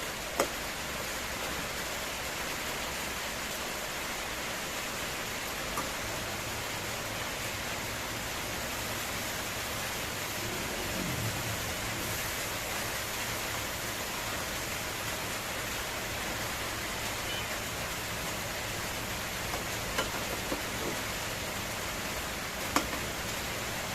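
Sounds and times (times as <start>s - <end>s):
egg sizzling in a pan: 18.5s - 23.5s.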